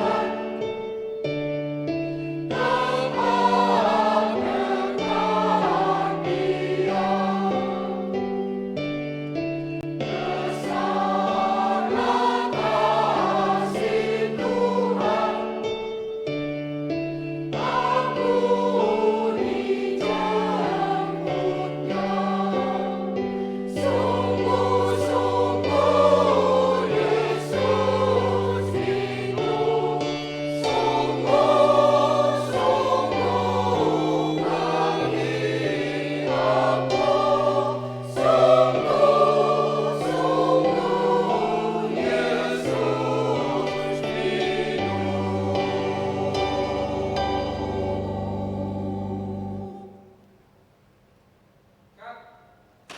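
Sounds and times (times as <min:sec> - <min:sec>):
church choir singing in harmony: 0:00.0 - 0:50.5.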